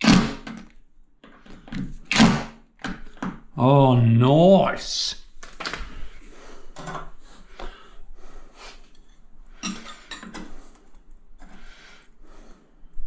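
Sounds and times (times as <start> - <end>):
small metal clinks and scrapes: 8.8 - 11.0.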